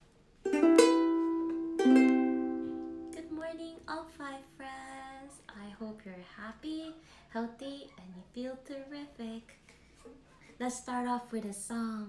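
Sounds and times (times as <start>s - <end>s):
ukulele chords strummed: 0.4s - 3.9s.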